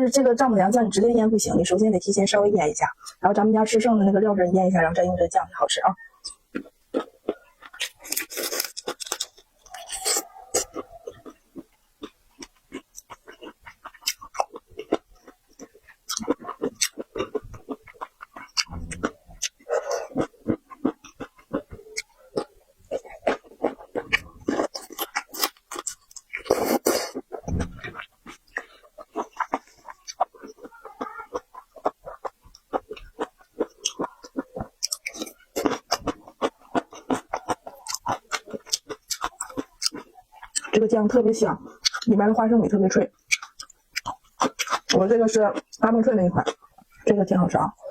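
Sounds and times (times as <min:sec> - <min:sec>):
chewing and sucking prawn: 0:06.2 - 0:42.2, 0:43.2 - 0:47.2
low thump: 0:27.5 - 0:27.9.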